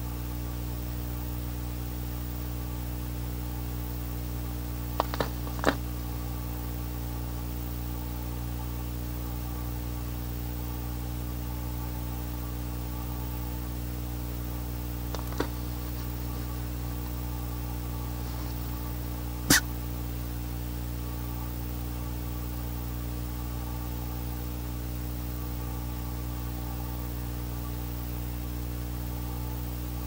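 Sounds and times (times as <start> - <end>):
low electrical hum and hiss: 0.0 - 30.0
owl sneezing: 18.1 - 19.8.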